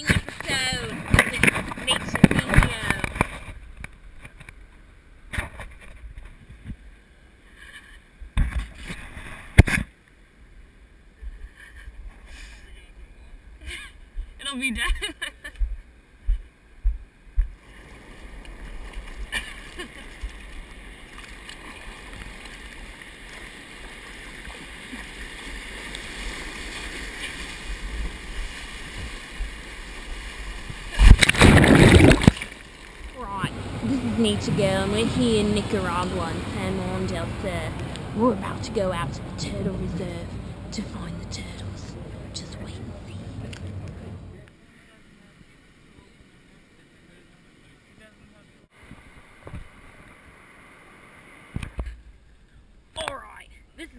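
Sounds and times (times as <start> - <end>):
water splashing in surf: 0.0 - 4.6, 17.4 - 48.1
wind rumbling on microphone: 27.6 - 32.4.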